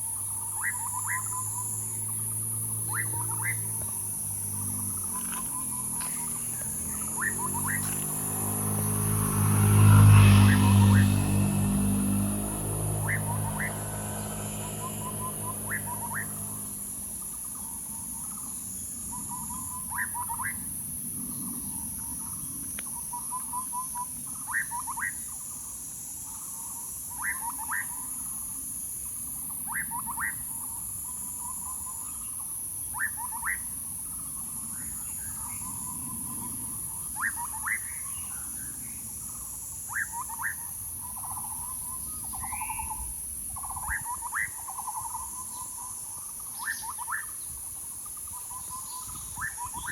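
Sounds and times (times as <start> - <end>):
bird trill and rising notes: 0.6 - 17.0.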